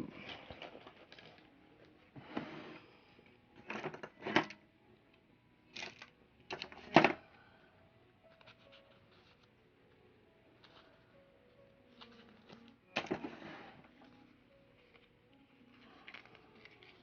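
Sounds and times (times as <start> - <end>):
small tools clicking and clattering: 5.7 - 7.2.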